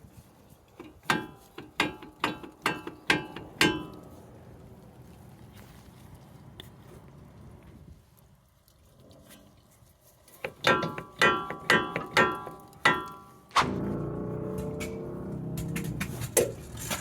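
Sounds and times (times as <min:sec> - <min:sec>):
metal struck hard ringing: 0:01.1 - 0:04.2, 0:10.6 - 0:16.2.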